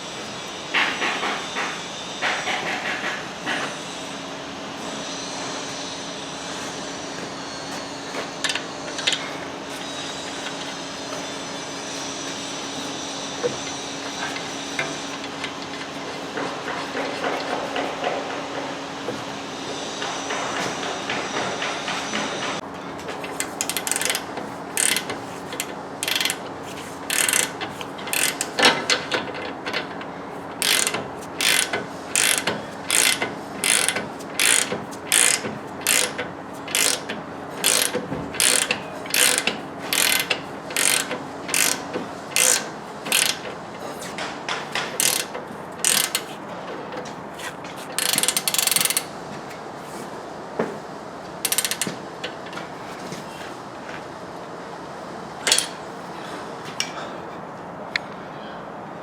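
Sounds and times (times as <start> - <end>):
ratchet wrench clicking: 23.3 - 29.3, 30.6 - 43.5, 44.8 - 46.3, 47.9 - 49.1, 51.5 - 52.0, 55.5 - 55.8.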